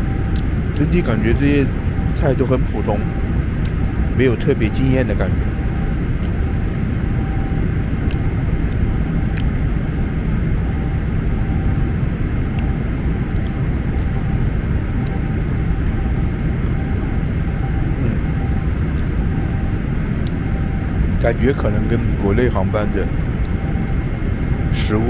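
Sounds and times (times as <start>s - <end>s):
airliner cabin engine rush: 0.0s - 25.0s
faint held tone: 0.0s - 25.0s
faint clicks: 12.5s - 14.3s.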